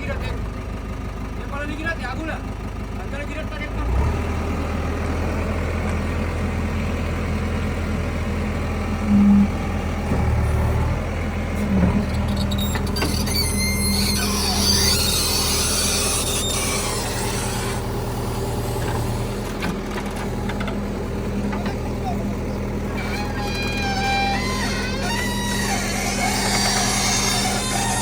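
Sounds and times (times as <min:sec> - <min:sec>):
diesel engine running: 0:00.0 - 0:28.0
machine squealing and hissing: 0:08.9 - 0:11.0, 0:11.6 - 0:19.4, 0:21.6 - 0:28.0
short loud tone: 0:09.0 - 0:09.6.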